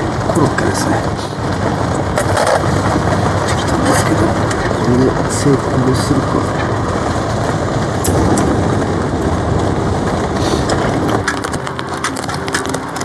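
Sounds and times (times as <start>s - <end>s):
heavy rain drumming on a tarp: 0.0s - 13.0s
sharp crackling pops: 0.0s - 13.0s
soft background music: 0.0s - 13.0s.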